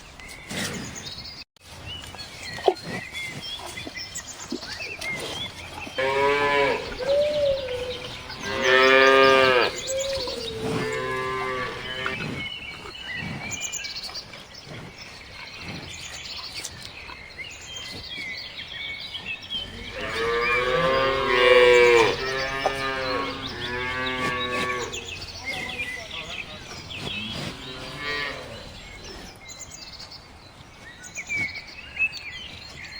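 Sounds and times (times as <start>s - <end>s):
cattle mooing: 6.0s - 12.3s, 19.6s - 29.2s.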